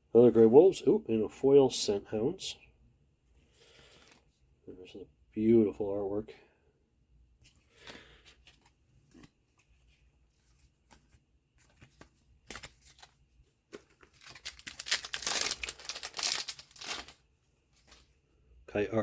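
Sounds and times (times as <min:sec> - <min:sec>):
foil wrapper tearing: 0:14.2 - 0:17.2.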